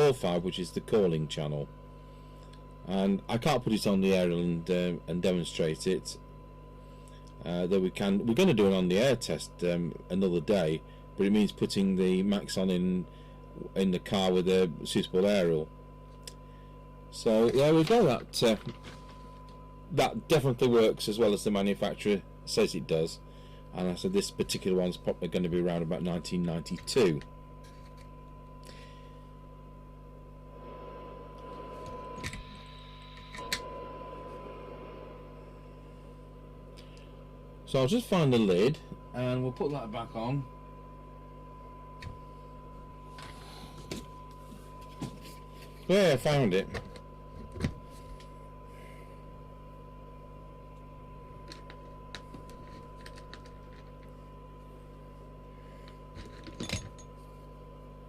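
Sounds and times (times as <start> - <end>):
low mains hum: 0.0 - 58.0
steady test tone: 16.6 - 55.8
brief higher tone: 30.5 - 36.6.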